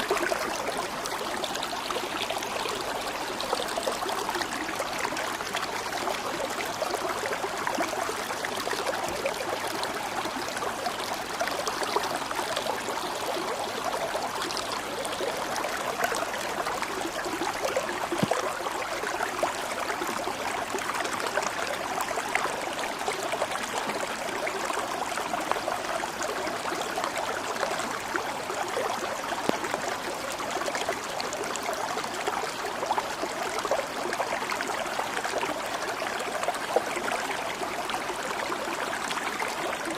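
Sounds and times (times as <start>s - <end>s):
stream water babbling: 0.0s - 39.9s.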